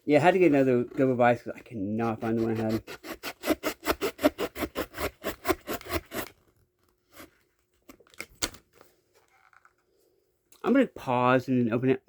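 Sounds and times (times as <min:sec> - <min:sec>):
blade sawing through plastic: 0:02.0 - 0:06.5.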